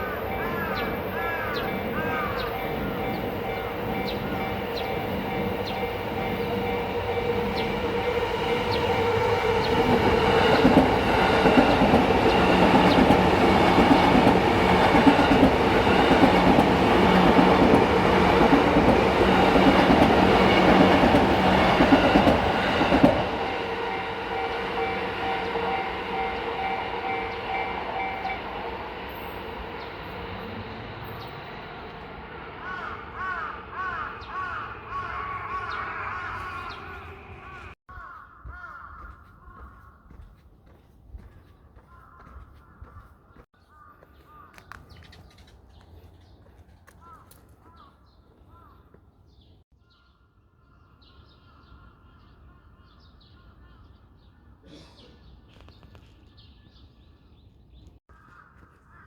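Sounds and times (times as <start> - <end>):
crows cawing: 0.0 - 3.9, 32.6 - 44.9, 46.8 - 49.0, 58.1 - 59.0
crossing warning bell: 0.0 - 32.6
train passing: 0.0 - 37.8.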